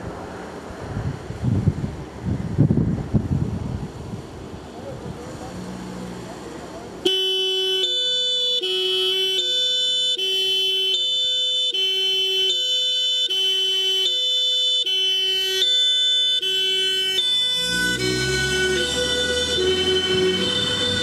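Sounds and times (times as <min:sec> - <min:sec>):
engine and road noise: 0:00.0 - 0:21.0
two-tone fire engine siren: 0:07.0 - 0:21.0.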